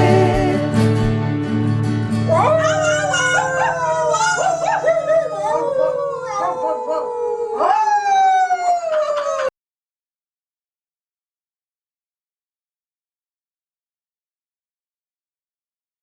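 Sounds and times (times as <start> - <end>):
song chord: 0.0 - 2.6
dog howling: 2.3 - 9.6.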